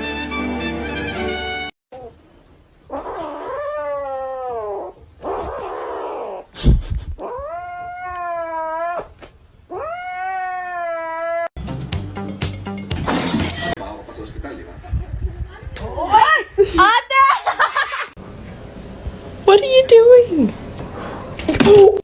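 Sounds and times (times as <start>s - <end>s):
cat yowling: 7.2s - 9.1s, 9.7s - 11.5s.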